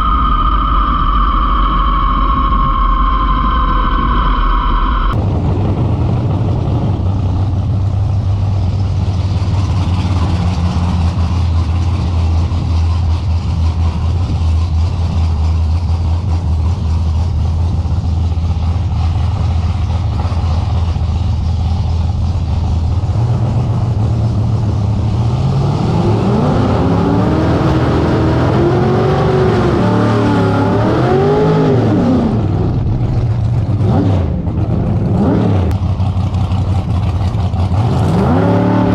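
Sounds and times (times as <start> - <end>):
race car engine revving: 0.0 - 38.9.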